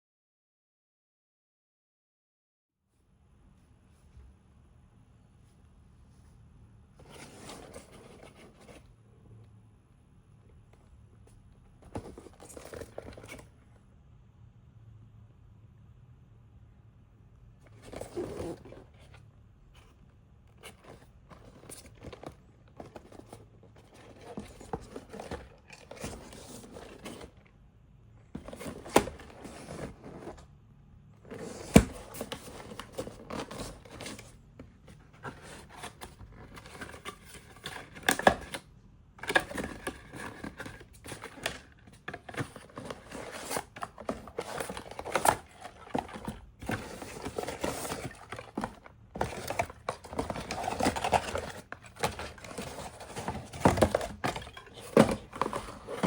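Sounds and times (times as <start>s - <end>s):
cardboard scraping: 7.0s - 9.0s, 11.8s - 13.5s, 17.6s - 19.2s, 19.8s - 27.5s, 28.2s - 38.6s, 39.2s - 56.0s.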